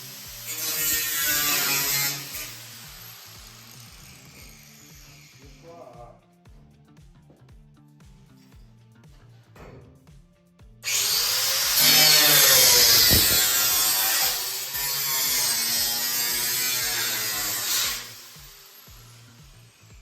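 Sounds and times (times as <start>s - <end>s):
power tool cutting sheet steel: 0.0s - 5.9s, 10.8s - 20.0s
background music: 0.0s - 20.0s.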